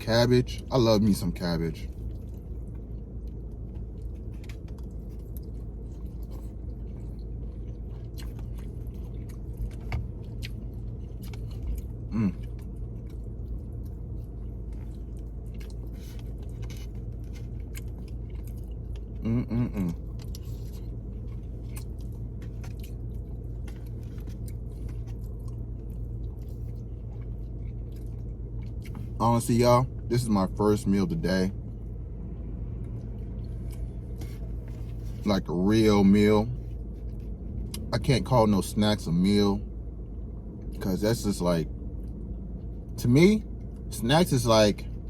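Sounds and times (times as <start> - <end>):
low hum inside car: 0.0 - 45.0
man chewing food: 1.9 - 29.2, 36.6 - 37.9, 41.8 - 42.9
man humming: 12.1 - 12.4, 19.2 - 20.0.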